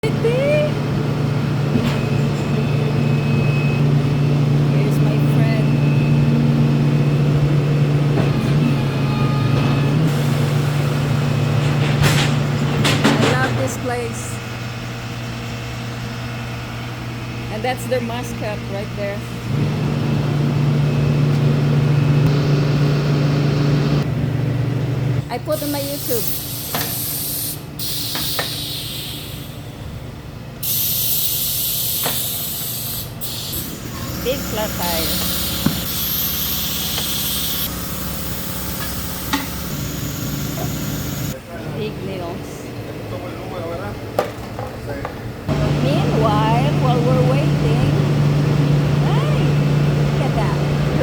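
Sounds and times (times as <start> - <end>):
vehicle engine running: 0.0 - 25.4, 45.4 - 51.0
compressed air hissing: 25.6 - 29.6, 30.6 - 41.4.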